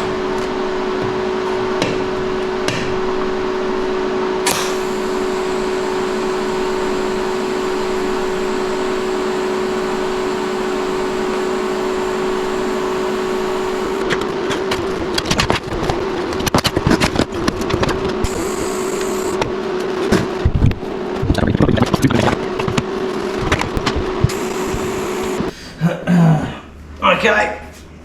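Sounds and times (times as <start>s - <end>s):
welder humming with hiss: 0.0s - 25.6s
short clicks: 4.4s - 14.2s.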